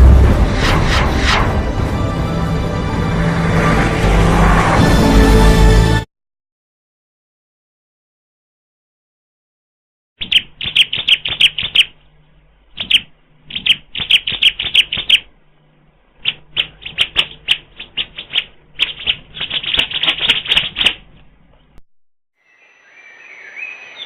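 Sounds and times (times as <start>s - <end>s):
bird singing high chirps: 10.2s - 12.0s, 22.4s - 24.0s.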